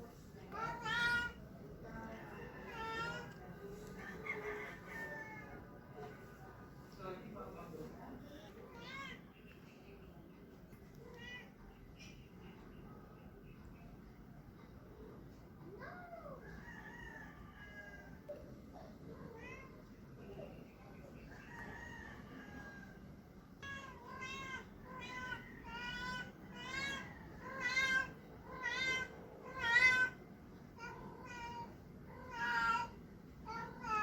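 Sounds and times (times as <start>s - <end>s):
cat meowing: 23.6s - 30.2s, 30.8s - 34.0s.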